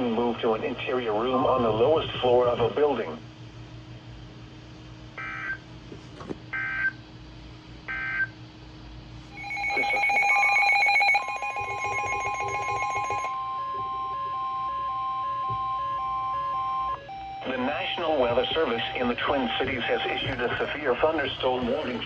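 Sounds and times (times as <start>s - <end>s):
data tone bursts: 9.3s - 13.9s
steady electronic alert tone: 9.3s - 15.2s
repeating beep: 9.4s - 13.3s.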